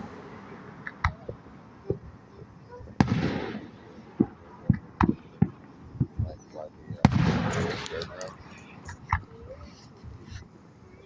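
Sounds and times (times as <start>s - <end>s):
small firework pops: 0.8s - 2.0s, 2.8s - 6.3s
firework bang with rumble: 3.0s - 6.2s, 7.0s - 7.8s.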